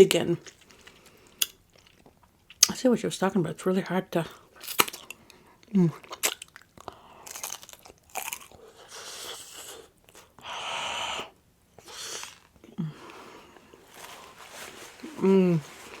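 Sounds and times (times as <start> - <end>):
crunchy chewing: 0.4 - 2.7, 4.6 - 10.3.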